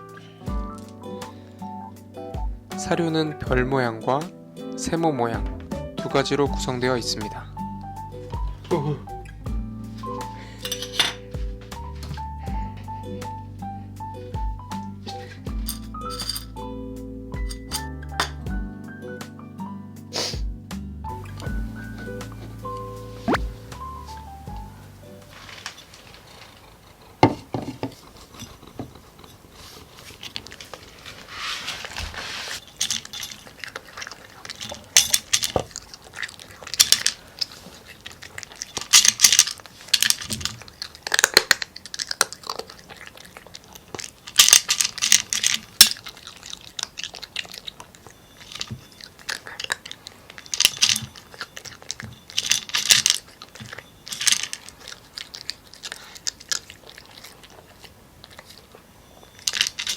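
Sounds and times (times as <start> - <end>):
cat crunching dry kibble: 21.4 - 32.0, 32.6 - 59.9.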